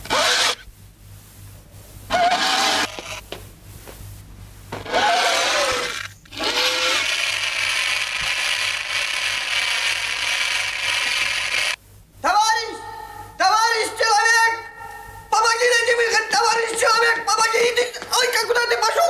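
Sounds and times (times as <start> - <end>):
whirring grinding sound effect: 0.0 - 0.6, 2.1 - 3.2, 4.8 - 11.8.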